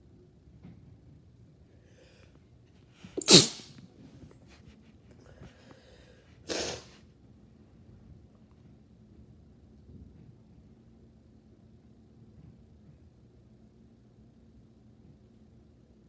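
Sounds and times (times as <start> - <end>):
person sneezing: 3.2 - 3.7, 6.5 - 6.9.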